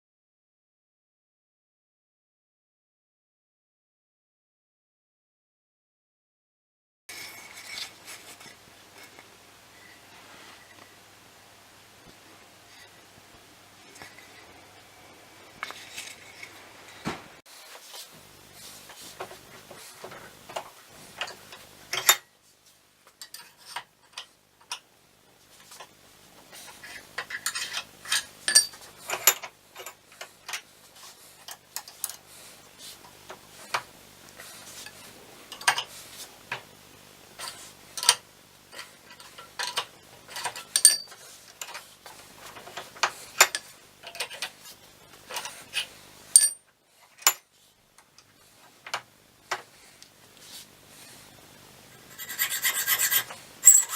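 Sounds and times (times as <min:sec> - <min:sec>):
metallic clicks and clinks: 0:53.2 - 0:53.9.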